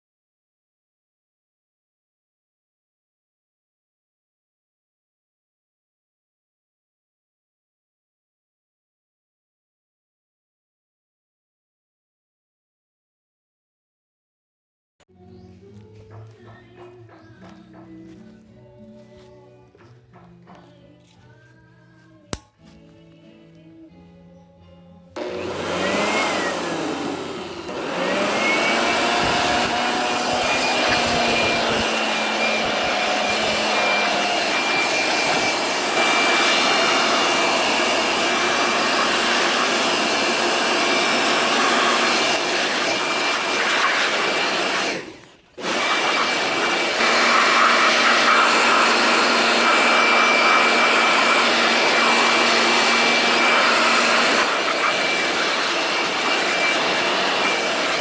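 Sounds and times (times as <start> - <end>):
high-speed electric motor whine: 25.2 - 58.0.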